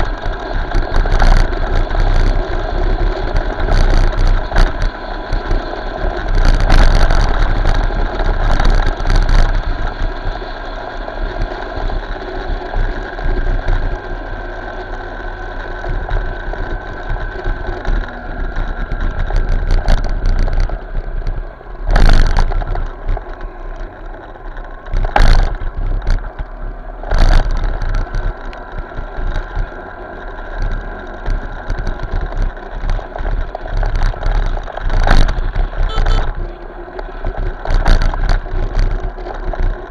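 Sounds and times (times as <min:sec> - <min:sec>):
motorcycle engine: 0:00.0 - 0:39.9.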